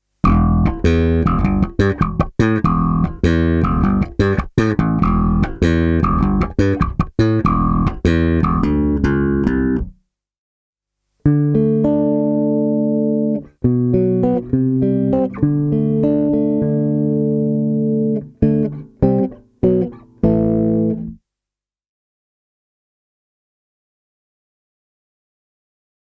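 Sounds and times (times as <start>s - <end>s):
plucked bass guitar notes: 0.2s - 10.0s, 11.3s - 21.2s.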